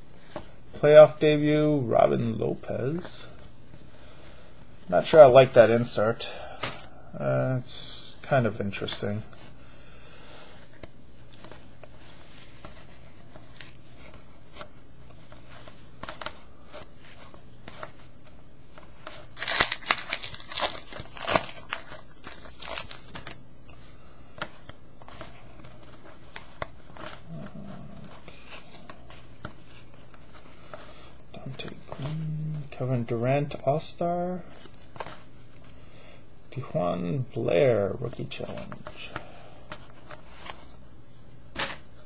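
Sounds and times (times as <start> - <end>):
cards rustling: 10.3 - 32.2
wrapper crinkling and tearing: 19.0 - 23.4.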